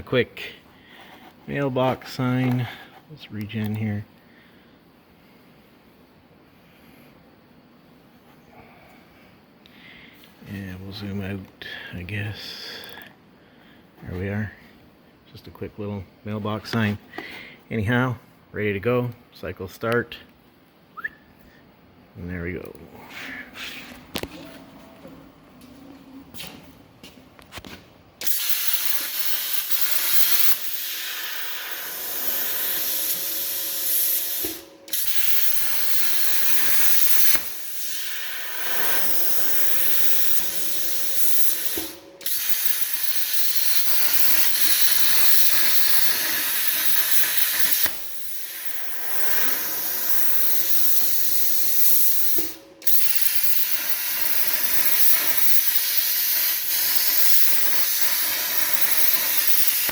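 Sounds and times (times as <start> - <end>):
plasma cutter arc hissing: 28.2 - 59.9.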